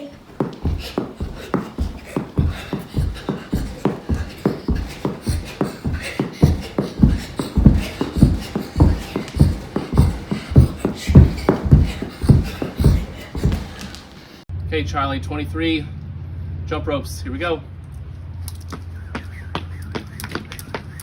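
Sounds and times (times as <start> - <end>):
jump rope thuds on floor: 0.2 - 14.0.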